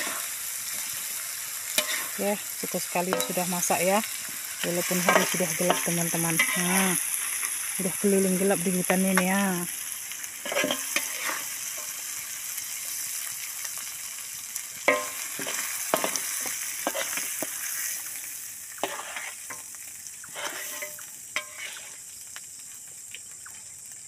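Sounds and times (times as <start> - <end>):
spatula scraping a pan: 0.0 - 1.0, 1.7 - 2.2, 3.0 - 7.6, 10.4 - 12.1, 14.9 - 22.0
sauce sizzling in hot oil: 0.0 - 24.0.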